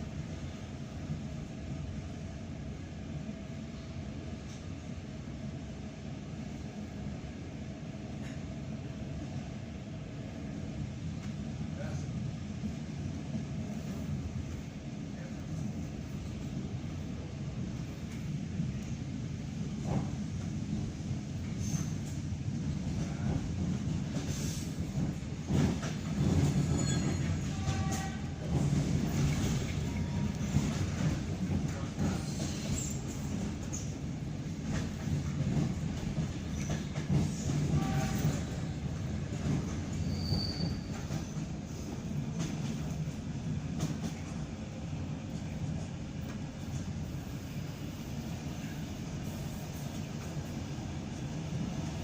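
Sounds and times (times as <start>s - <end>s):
train rumbling: 0.0s - 52.0s
high-pitched wheel squeal: 40.0s - 40.9s.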